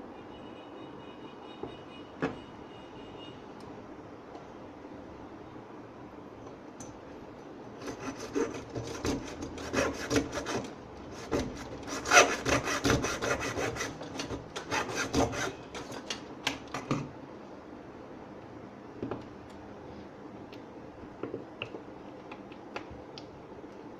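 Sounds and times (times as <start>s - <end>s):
tool scraping plastic casing: 7.8s - 16.2s.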